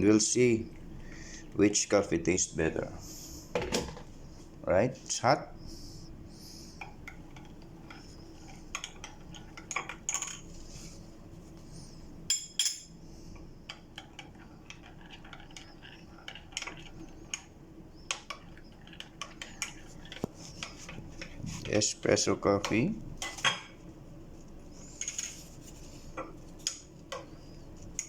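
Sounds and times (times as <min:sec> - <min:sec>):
metal spoon clinking against cups: 0:12.3 - 0:13.0.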